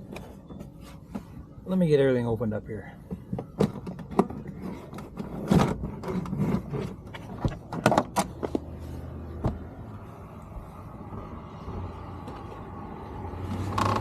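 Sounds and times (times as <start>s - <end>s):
car panels knocking and clicking: 3.0s - 8.7s.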